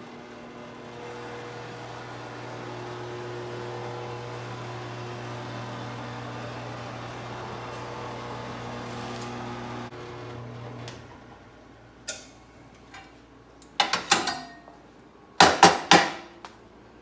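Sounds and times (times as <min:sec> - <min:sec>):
power tool motor humming: 0:00.0 - 0:10.9.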